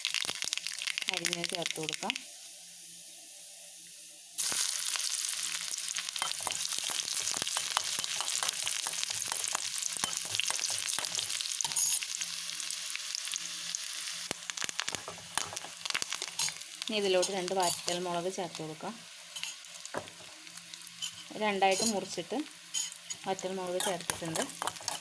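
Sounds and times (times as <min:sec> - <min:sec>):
mustard seeds popping: 0:00.0 - 0:02.3, 0:14.3 - 0:18.7
shallots sizzling in hot oil: 0:00.0 - 0:25.0.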